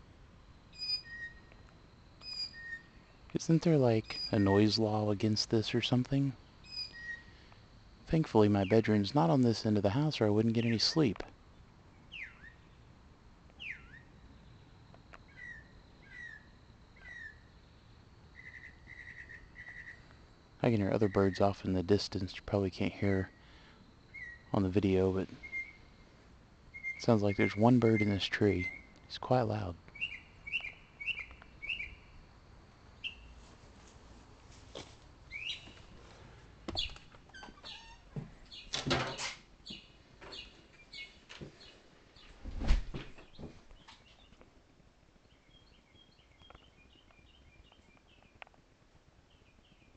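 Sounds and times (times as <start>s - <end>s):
faint steady high tone: 0.0s - 11.6s, 13.6s - 32.3s
bird singing: 0.7s - 1.6s, 2.2s - 7.5s, 8.2s - 12.9s, 13.6s - 26.0s, 26.7s - 32.3s, 33.0s - 33.3s, 35.3s - 35.9s, 36.7s - 42.4s, 43.2s - 44.4s, 45.2s - 48.6s, 49.2s - 49.9s
rustle: 29.8s - 37.4s.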